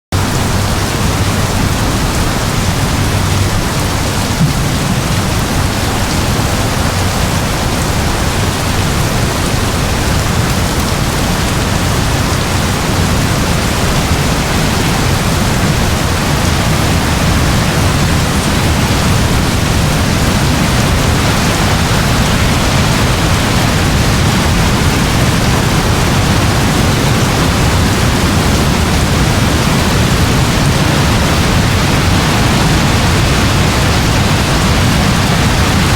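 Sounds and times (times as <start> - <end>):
low rumble: 0.2 - 9.2
rain hissing: 0.2 - 35.9.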